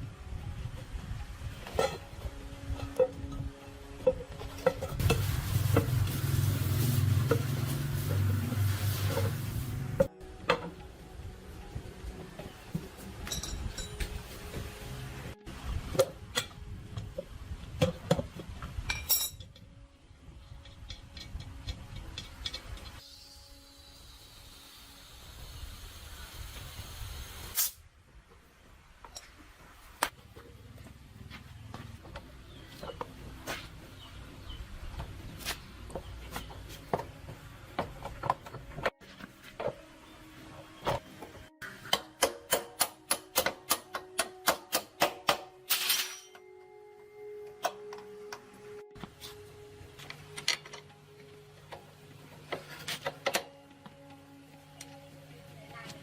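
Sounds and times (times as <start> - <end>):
metal tools clinking: 13.2 - 14.1, 18.9 - 19.6, 45.7 - 46.4.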